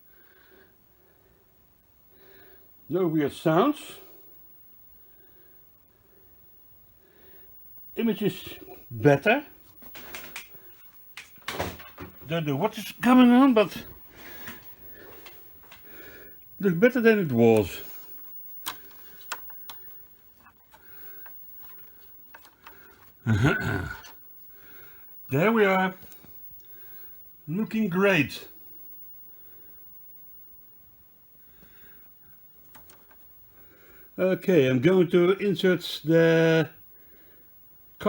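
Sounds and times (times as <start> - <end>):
person speaking: 12.2 - 14.4, 16.6 - 18.9, 25.3 - 26.2, 27.4 - 28.5
rubbing and scraping handling: 17.4 - 23.2.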